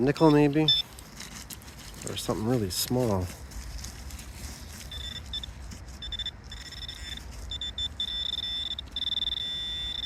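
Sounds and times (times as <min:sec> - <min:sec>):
pinpointer beeping tone: 0:00.1 - 0:00.9, 0:04.9 - 0:10.0.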